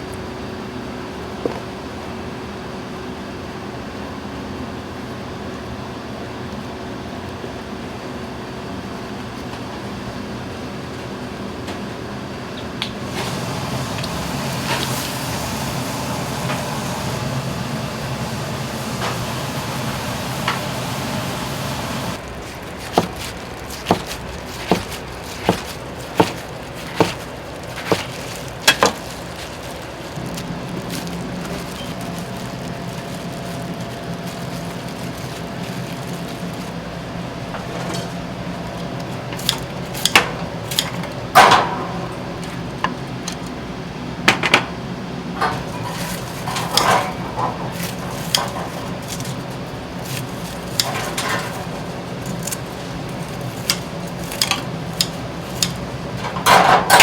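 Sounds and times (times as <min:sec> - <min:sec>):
frying sizzle: 0:12.9 - 0:37.0
utensils clattering: 0:18.0 - 0:41.8, 0:45.4 - 0:57.0.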